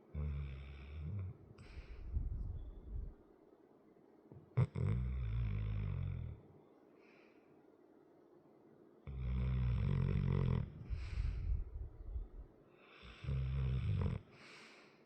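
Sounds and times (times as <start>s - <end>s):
dog snoring: 0.1s - 3.1s, 4.6s - 6.4s, 9.1s - 11.8s, 12.9s - 14.3s
breathy exhale: 1.6s - 2.3s, 10.8s - 11.8s, 14.3s - 15.0s.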